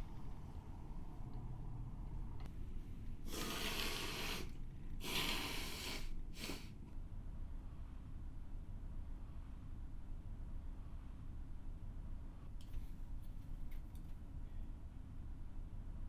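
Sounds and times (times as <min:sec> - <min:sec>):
person breathing: 0:03.3 - 0:06.8.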